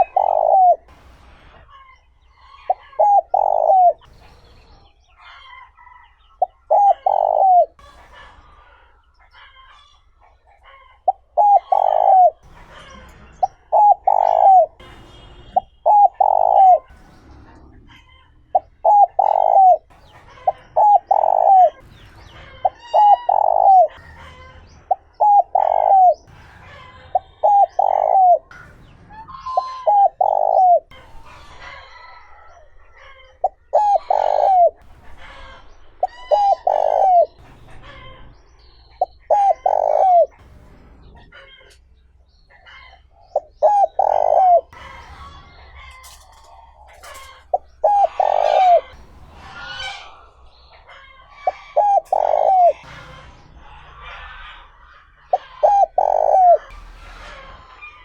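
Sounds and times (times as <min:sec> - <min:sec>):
dove cooing: 0:00.0 - 0:00.9, 0:02.5 - 0:04.4, 0:05.2 - 0:09.9, 0:10.6 - 0:26.3, 0:27.1 - 0:28.6, 0:29.3 - 0:34.8, 0:36.0 - 0:38.1, 0:39.0 - 0:40.4, 0:42.6 - 0:56.8
small birds chirping: 0:00.0 - 0:56.9.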